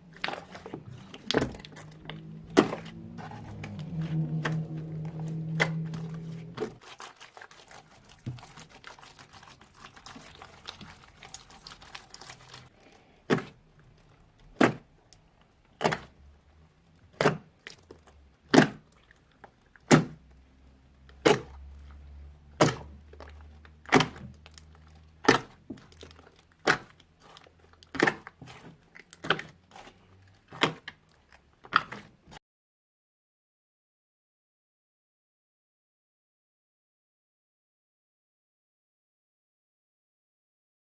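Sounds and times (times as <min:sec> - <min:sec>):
slime wet crackles: 0:00.1 - 0:16.1, 0:21.0 - 0:32.1.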